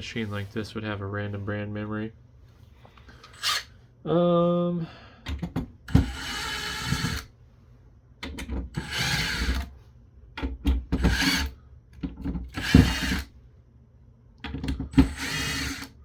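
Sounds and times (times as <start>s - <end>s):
cordless drill whining: 3.2s - 3.7s, 5.9s - 7.3s, 8.8s - 9.7s, 11.0s - 11.6s, 12.5s - 13.3s, 14.8s - 16.0s.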